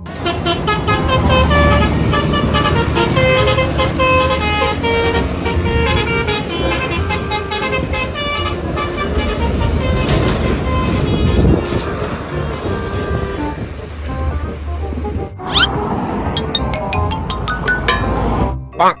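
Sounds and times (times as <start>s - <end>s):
bus horn melody: 0.0s - 14.3s.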